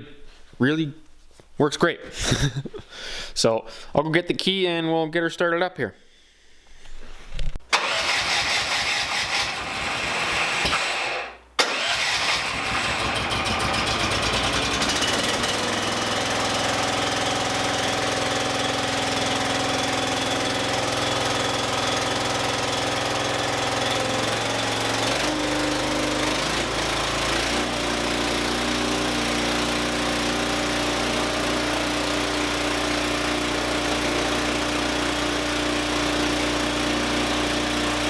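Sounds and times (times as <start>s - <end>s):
electric starter cranking: 7.7s - 38.0s.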